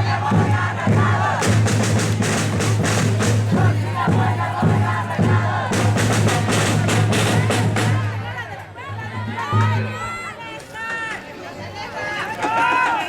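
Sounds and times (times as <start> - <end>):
loud music with drumbeat: 0.0 - 8.4
voices: 0.0 - 13.0.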